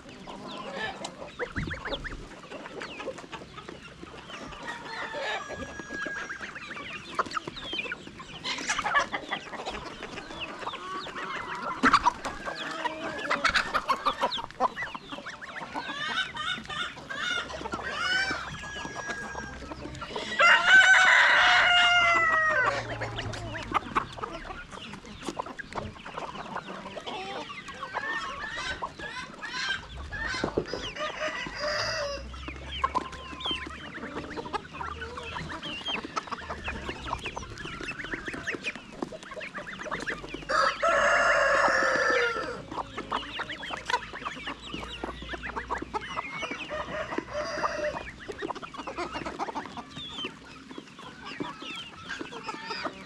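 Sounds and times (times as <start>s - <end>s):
chickens clucking: 0.0s - 53.0s
rooster crowing: 4.6s - 6.4s, 17.8s - 22.9s, 30.8s - 32.3s, 40.5s - 42.7s, 46.6s - 48.0s.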